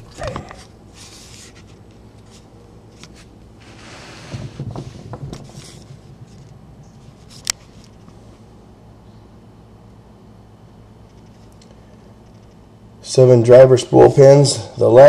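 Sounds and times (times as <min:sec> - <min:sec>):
short rustle: 0:00.5 - 0:08.4.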